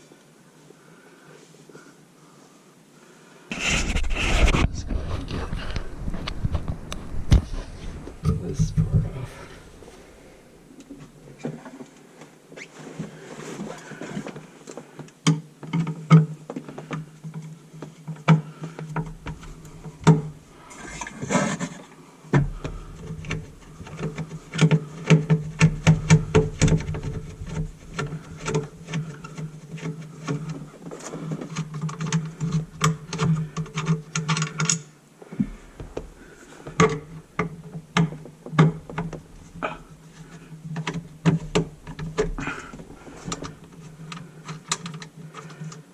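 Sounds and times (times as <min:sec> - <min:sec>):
steady low hum: 0:00.0 - 0:12.4, 0:16.8 - 0:45.8
clicks and knocks of drain parts: 0:22.4 - 0:30.6.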